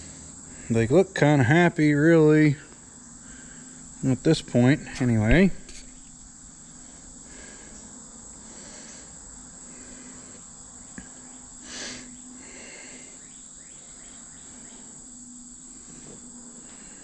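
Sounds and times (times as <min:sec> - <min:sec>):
crickets chirring: 0:00.0 - 0:17.0.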